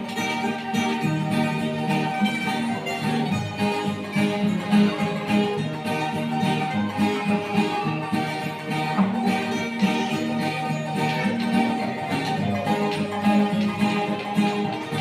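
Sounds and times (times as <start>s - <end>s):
plucked acoustic guitar music: 0.0s - 15.0s.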